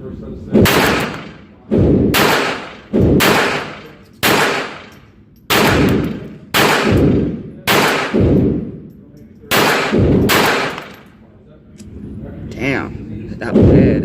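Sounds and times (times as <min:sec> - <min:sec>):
pistol shots echoing: 0:00.6 - 0:08.9, 0:09.5 - 0:11.1.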